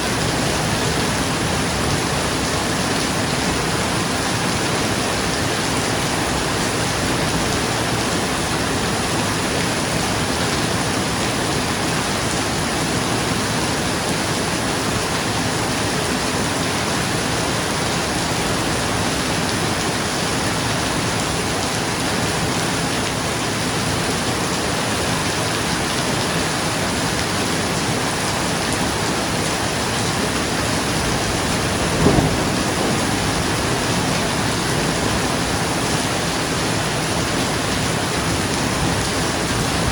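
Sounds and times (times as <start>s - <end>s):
rain on a roof: 0.0s - 39.9s
thunder crack: 30.9s - 35.8s.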